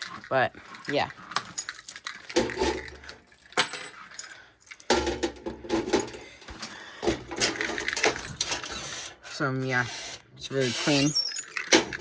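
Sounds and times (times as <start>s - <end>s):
keys jangling: 0.0s - 4.9s, 7.0s - 8.6s.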